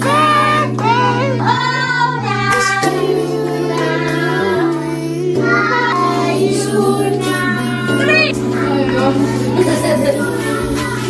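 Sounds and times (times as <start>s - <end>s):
person singing: 0.0s - 11.0s
sustained instrumental chords: 6.0s - 11.0s.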